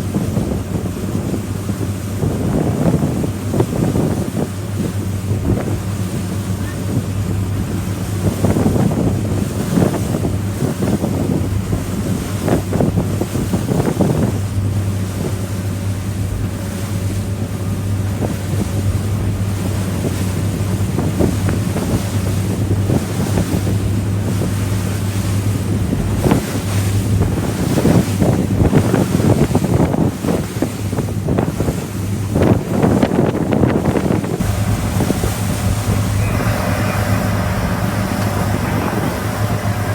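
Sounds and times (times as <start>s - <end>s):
boat engine drone: 0.0s - 39.9s
wind buffeting microphone: 0.0s - 39.9s
water rushing: 33.8s - 39.9s.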